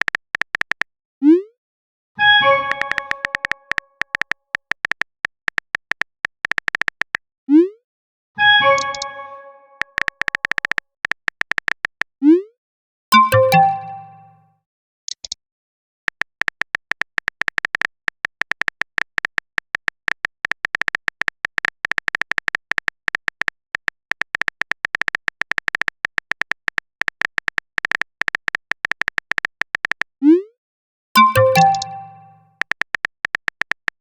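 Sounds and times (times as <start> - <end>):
phone typing beeping clicks: 2.4 - 7.2, 8.6 - 12.0, 13.1 - 14.4, 31.2 - 34.0
notification chime: 8.6 - 9.8, 13.1 - 14.4, 31.2 - 32.5.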